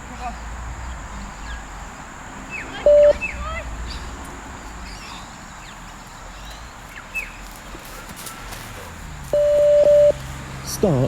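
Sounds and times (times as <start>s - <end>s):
electronic beep tone: 2.8s - 3.3s, 9.4s - 10.2s.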